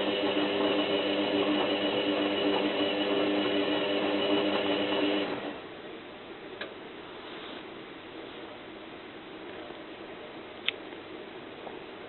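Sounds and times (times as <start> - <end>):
washing machine motor humming: 0.0 - 5.8.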